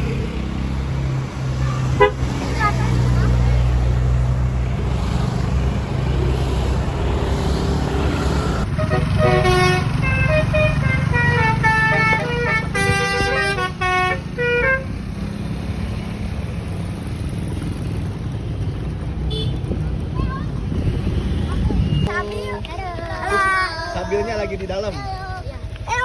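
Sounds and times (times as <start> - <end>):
minibus engine and road rumble: 0.0 - 26.0
musical horn playing a tune: 8.7 - 14.9.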